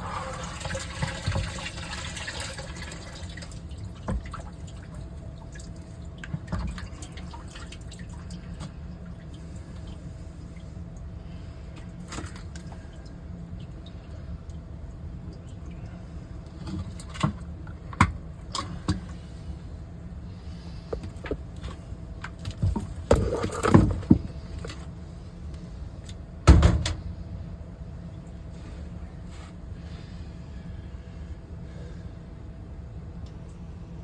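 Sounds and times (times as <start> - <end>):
handling knocks and clatters: 21.0 - 24.9
loud thump: 26.5 - 27.1.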